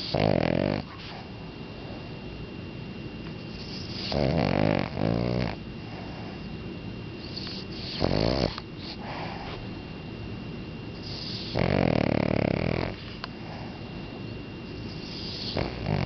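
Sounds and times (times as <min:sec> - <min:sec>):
dog snoring: 0:00.0 - 0:02.0, 0:03.3 - 0:06.5, 0:07.2 - 0:09.7, 0:10.9 - 0:14.0, 0:14.6 - 0:16.0.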